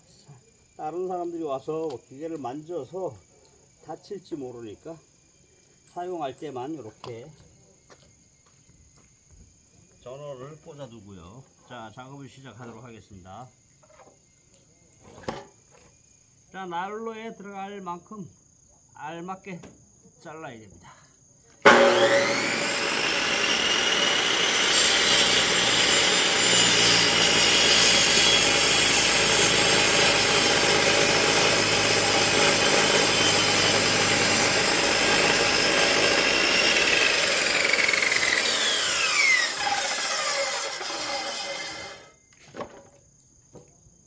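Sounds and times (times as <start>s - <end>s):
electric saw motor whining: 21.6s - 42.1s
saw cutting through log: 21.6s - 42.1s.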